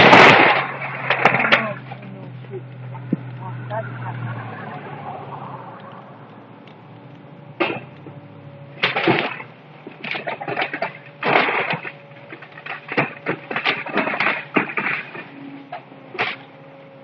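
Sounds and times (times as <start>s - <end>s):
wood cracking and splintering: 0.0s - 3.4s, 8.7s - 16.6s
steady low hum: 0.0s - 17.0s.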